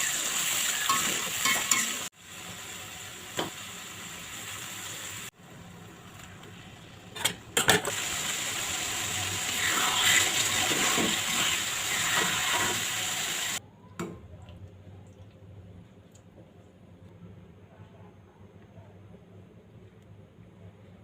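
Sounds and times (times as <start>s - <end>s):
food hissing in a pan: 8.0s - 13.6s.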